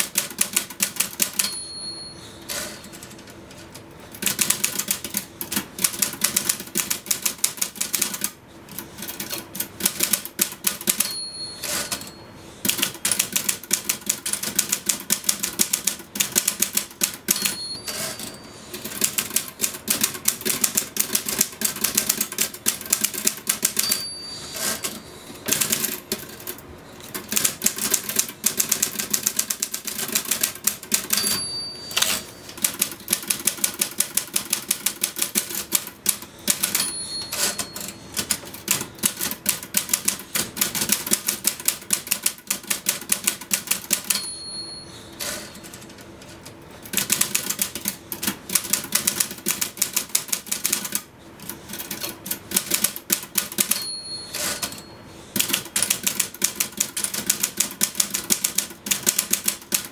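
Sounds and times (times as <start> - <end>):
typewriter margin bell ding: 1.1 - 3.1, 10.8 - 12.3, 16.4 - 19.0, 23.5 - 25.8, 30.7 - 33.1, 36.3 - 38.4, 43.9 - 45.8, 52.8 - 55.0
typewriter key strikes: 9.2 - 12.1, 27.1 - 44.3.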